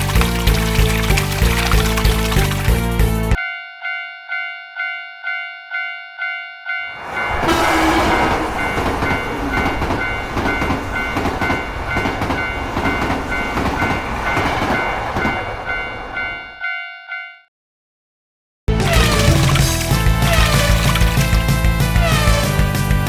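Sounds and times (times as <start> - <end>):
railroad crossing bell ringing: 3.4 - 17.5
train rumble and wheel noise: 6.9 - 16.5, 18.9 - 23.0.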